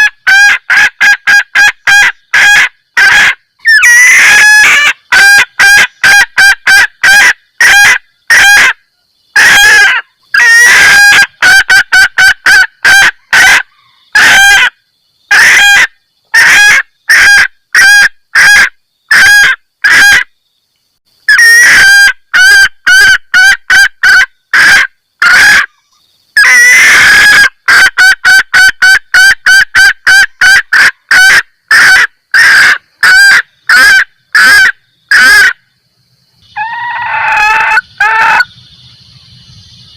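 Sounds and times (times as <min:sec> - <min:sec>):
junglefowl hen cackling: 0:00.0 - 0:20.3, 0:21.3 - 0:35.6, 0:36.5 - 0:39.4.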